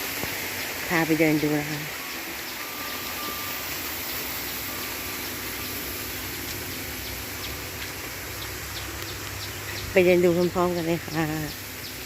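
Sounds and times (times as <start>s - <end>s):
water rushing: 0.0s - 12.0s
faint insect chirps: 2.0s - 7.8s.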